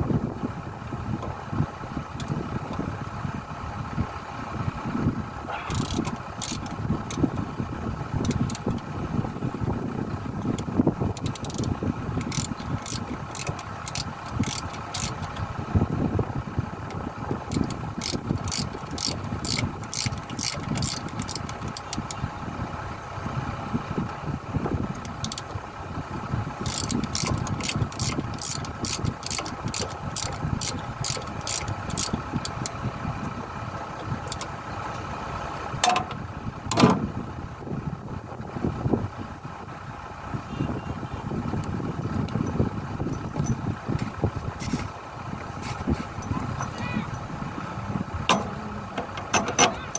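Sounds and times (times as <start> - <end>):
diesel engine idling: 0.0 - 49.9
sharp metallic clicks: 5.6 - 7.4, 8.2 - 8.9, 10.4 - 15.9, 16.8 - 22.3, 24.9 - 25.6, 26.5 - 33.4, 34.0 - 35.1, 48.2 - 49.9.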